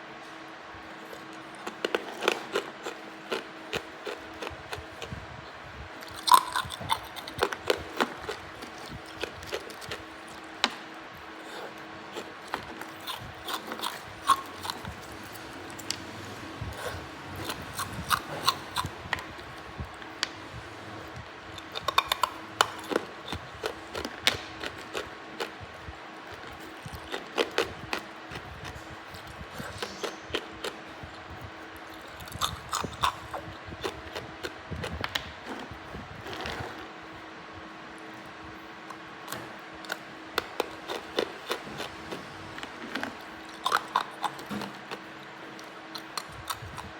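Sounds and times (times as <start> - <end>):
faint steady hum: 0.0 - 46.9
ice being chewed: 0.9 - 5.2, 5.9 - 20.2, 21.5 - 37.0, 38.9 - 46.9.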